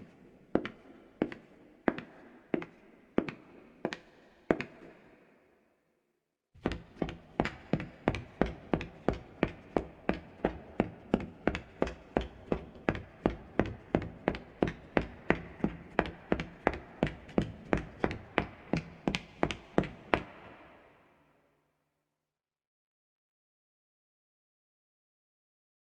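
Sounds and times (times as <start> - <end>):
footsteps on wooden floor: 6.6 - 20.5.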